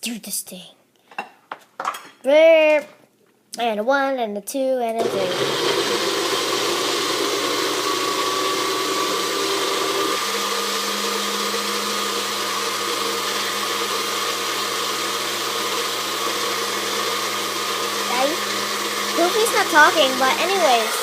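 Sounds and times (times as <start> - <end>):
electric blender running: 5.0 - 21.0.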